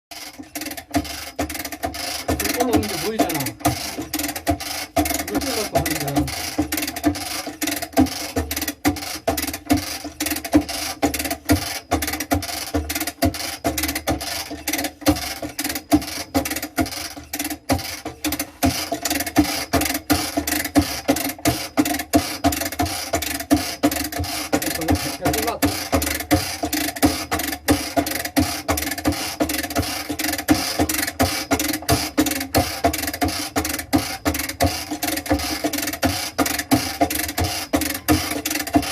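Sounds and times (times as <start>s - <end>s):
rapid sharp clicks: 0.1s - 38.9s
machine humming: 18.0s - 28.0s.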